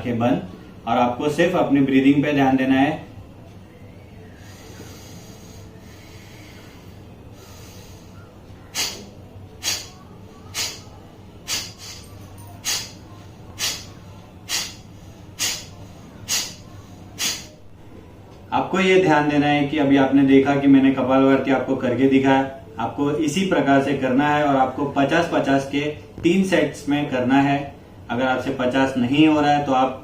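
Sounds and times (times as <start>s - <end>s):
forceful exhalations through nose: 8.7s - 10.9s, 11.5s - 13.0s, 13.6s - 17.6s.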